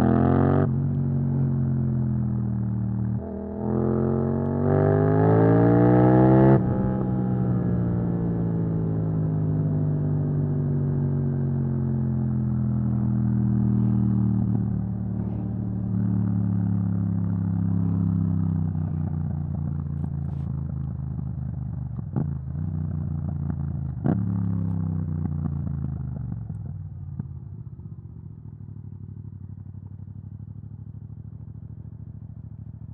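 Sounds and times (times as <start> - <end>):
motorcycle engine slowing: 2.2 - 28.3.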